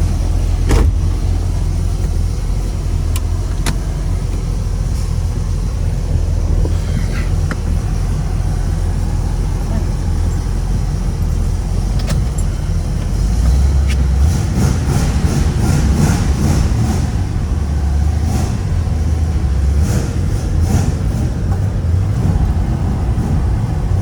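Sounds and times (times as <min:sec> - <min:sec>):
car engine exhaust rumble: 0:00.0 - 0:24.0.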